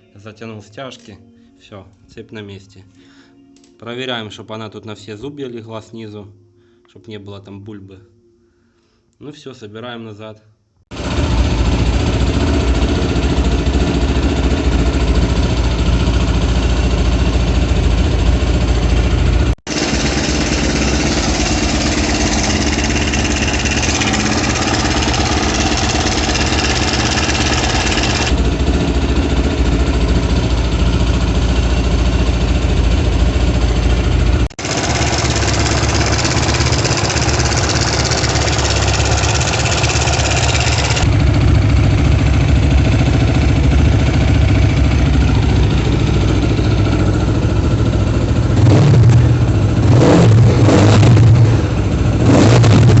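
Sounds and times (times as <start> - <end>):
motorcycle engine running: 10.9 - 53.0.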